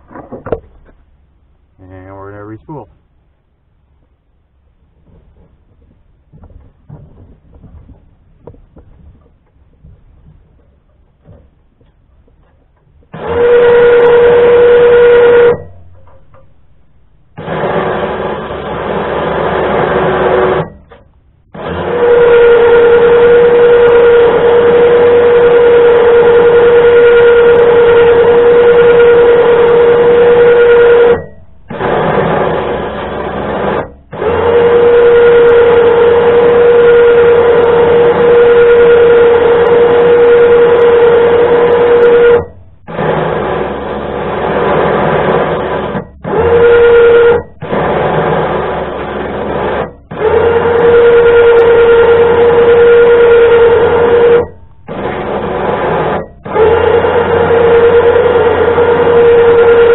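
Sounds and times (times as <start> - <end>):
electric winch motor whining: 12.4 - 59.9.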